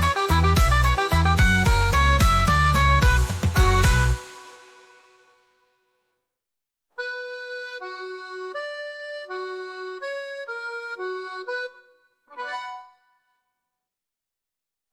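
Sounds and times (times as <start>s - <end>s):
free-reed instrument melody: 0.0s - 5.3s, 7.0s - 13.4s.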